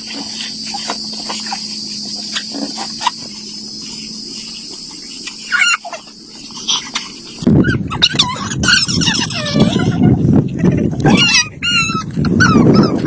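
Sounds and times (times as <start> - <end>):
high-pitched insect drone: 0.0 - 7.6
low hum: 0.0 - 13.0.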